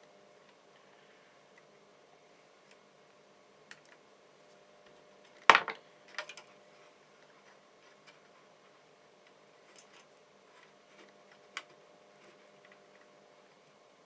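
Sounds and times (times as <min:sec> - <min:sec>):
faint clicks of small tools: 0:03.7 - 0:04.0.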